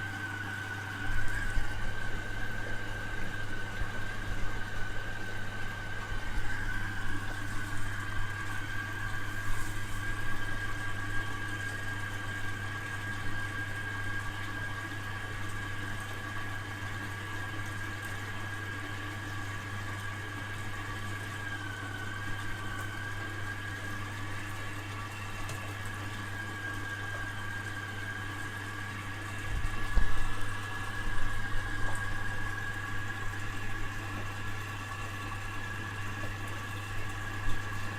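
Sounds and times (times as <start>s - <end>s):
washing machine running: 0.0s - 37.9s.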